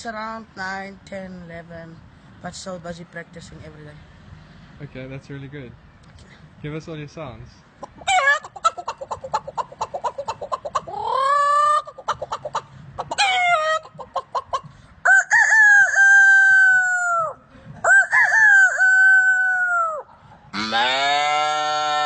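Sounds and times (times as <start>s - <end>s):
man imitating chicken clucking: 7.8s - 14.6s, 15.3s - 22.0s
man imitating rooster crows: 15.3s - 20.0s, 20.6s - 22.0s.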